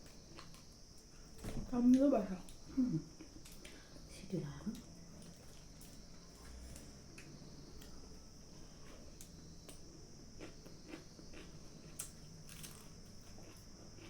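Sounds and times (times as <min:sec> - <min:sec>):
chewing and mouth sounds: 0:09.8 - 0:14.0.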